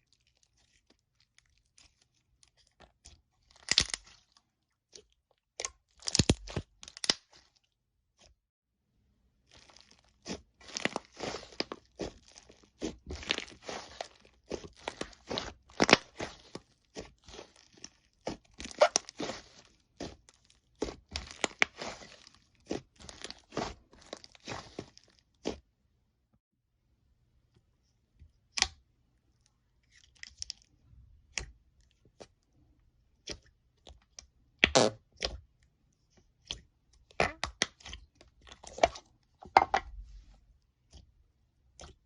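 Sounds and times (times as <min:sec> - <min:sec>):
slime crackling and popping: 0:00.2 - 0:04.3, 0:05.6 - 0:07.5, 0:09.5 - 0:25.6.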